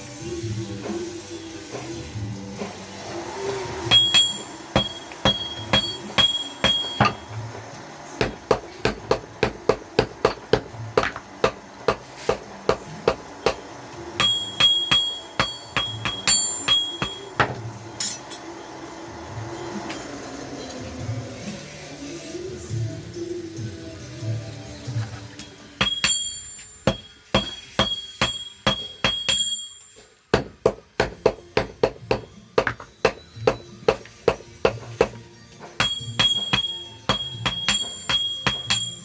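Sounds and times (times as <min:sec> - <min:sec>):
hammer striking steel on anvil: 0:03.8 - 0:07.4, 0:08.2 - 0:18.5, 0:25.4 - 0:39.0.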